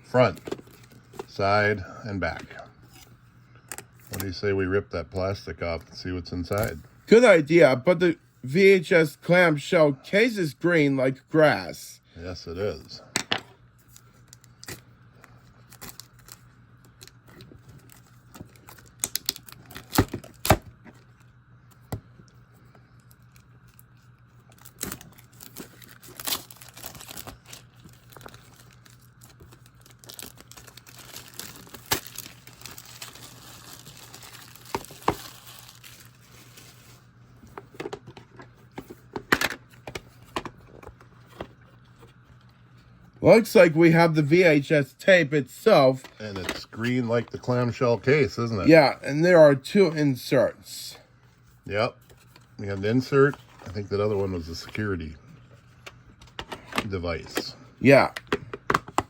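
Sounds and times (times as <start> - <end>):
plastic wrap crinkling and tearing: 14.0 - 20.6, 23.0 - 37.2.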